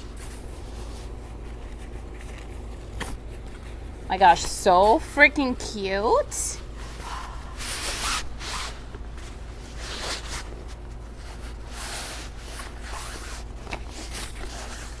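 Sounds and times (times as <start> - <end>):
material rustling swishes: 6.7 - 15.0
zipper-like rasp: 6.8 - 8.8.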